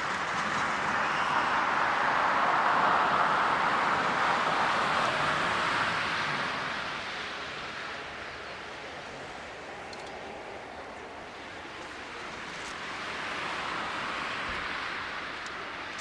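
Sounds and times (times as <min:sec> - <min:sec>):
jet airliner engines rushing: 0:00.0 - 0:16.0.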